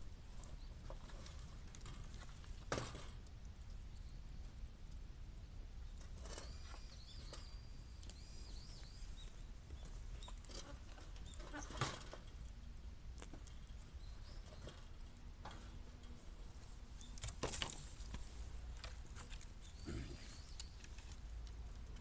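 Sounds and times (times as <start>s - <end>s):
bamboo burning with crackles: 0.0s - 14.4s.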